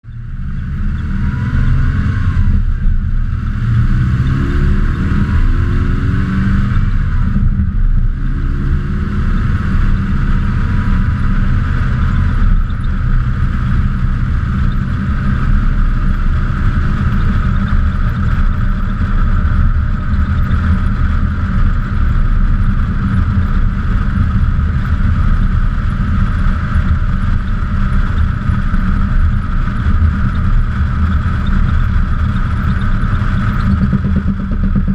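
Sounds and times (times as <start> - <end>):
car engine accelerating: 0.0 - 34.9
road and wind rumble: 0.0 - 34.9.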